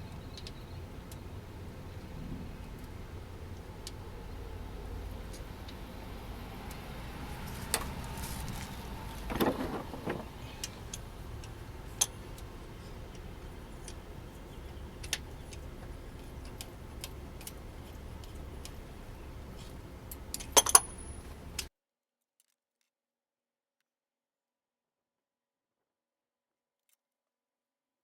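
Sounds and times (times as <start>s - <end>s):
low steady hum: 0.0s - 21.7s
hand tools clinking: 6.7s - 21.7s.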